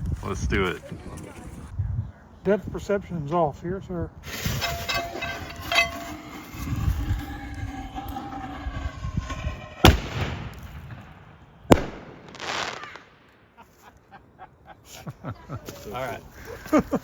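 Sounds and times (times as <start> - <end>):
firework shell bursting: 4.3 - 13.0
firework mortar launch bang: 8.7 - 13.0.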